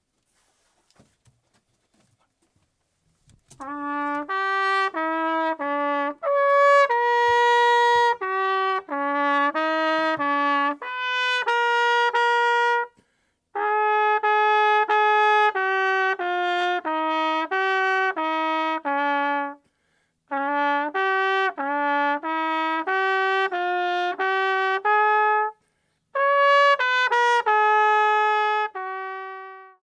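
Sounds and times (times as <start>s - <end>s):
solo trumpet melody: 3.5s - 19.7s, 20.3s - 29.8s
player breathing: 13.0s - 13.4s, 19.6s - 20.2s, 25.6s - 26.1s.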